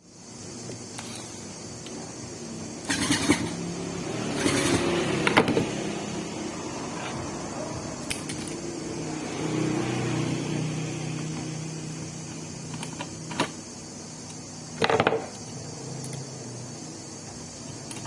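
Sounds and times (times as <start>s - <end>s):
fan parts clicking and knocking: 4.2s - 5.8s, 11.0s - 16.3s.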